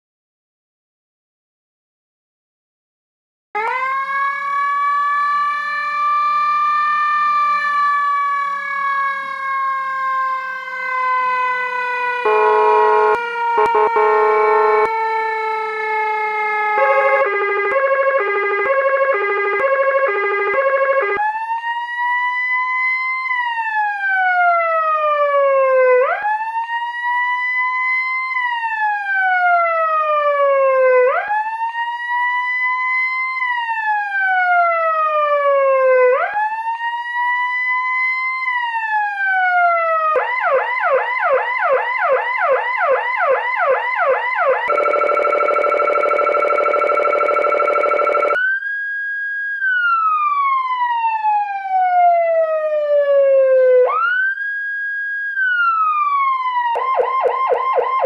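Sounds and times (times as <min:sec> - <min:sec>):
siren fast yelp: 0:03.6 - 0:21.8, 0:39.3 - 0:58.0
siren wailing: 0:03.6 - 0:58.0
electronic siren hi-lo tones: 0:12.0 - 0:21.2, 0:40.3 - 0:48.5.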